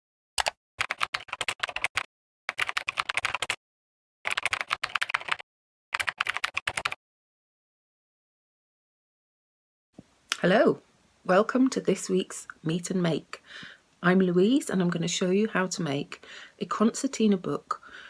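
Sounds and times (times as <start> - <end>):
rapid keyboard typing: 0.4 - 3.6, 4.3 - 5.4, 6.0 - 7.0.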